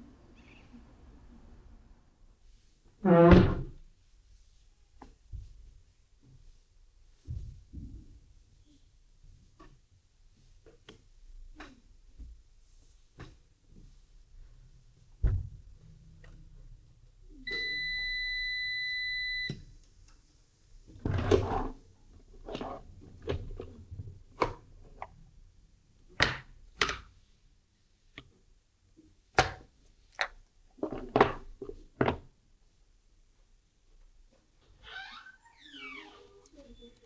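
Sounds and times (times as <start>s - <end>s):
objects knocking and clunking: 30.2s - 32.3s.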